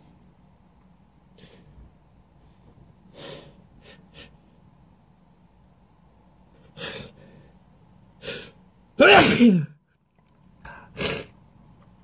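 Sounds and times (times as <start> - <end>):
person sniffing and breathing sharply: 1.3 - 4.6.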